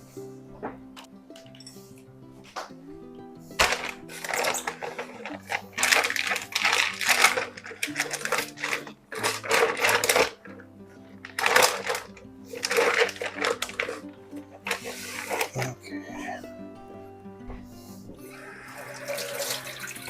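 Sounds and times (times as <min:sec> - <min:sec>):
music with held notes: 0:00.0 - 0:20.0
rustling and clattering handling: 0:03.4 - 0:16.2.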